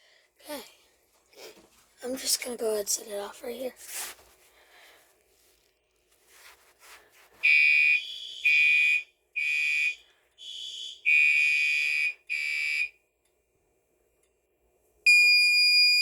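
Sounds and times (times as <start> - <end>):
fire alarm two-pitch pulses: 7.4 - 13.0, 15.1 - 16.0.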